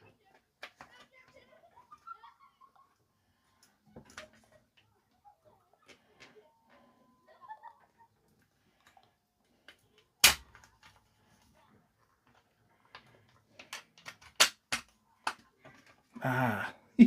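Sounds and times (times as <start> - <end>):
plastic toy parts clicking: 0.2 - 1.4, 12.2 - 16.0
plastic snap: 9.6 - 11.0, 13.6 - 15.4.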